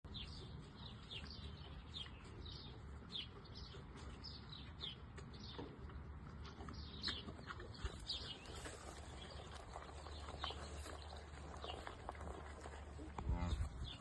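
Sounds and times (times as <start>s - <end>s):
birds chirping: 0.1s - 14.0s.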